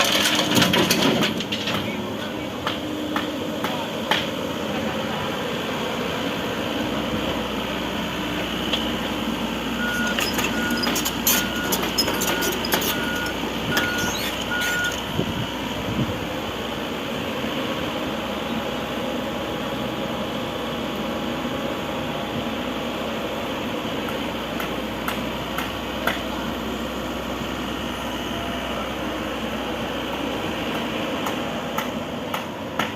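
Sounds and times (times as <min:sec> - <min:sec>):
heavy diesel machinery running: 0:00.0 - 0:32.9
backup alarm beeping: 0:09.8 - 0:15.0.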